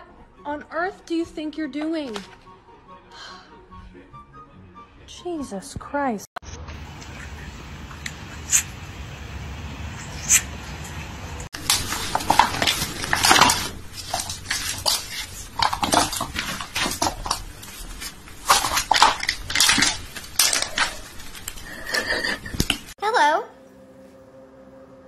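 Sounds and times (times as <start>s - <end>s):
hard objects clattering and clinking: 11.6s - 23.0s.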